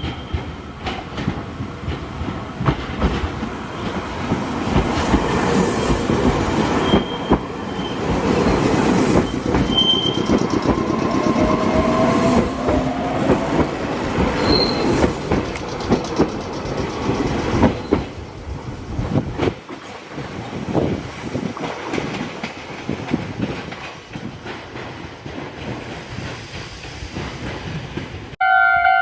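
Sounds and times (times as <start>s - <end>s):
train wheels clacking over rail joints: 0.0s - 28.4s
high wheel squeals: 6.7s - 12.5s, 14.4s - 15.2s.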